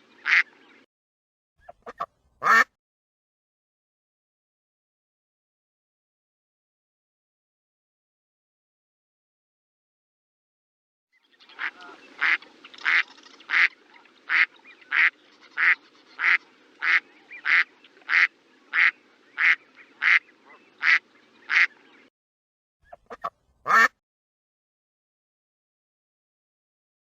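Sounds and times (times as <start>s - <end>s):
duck quacking: 0.2s - 0.5s, 1.6s - 2.7s, 11.6s - 21.8s, 22.9s - 24.0s.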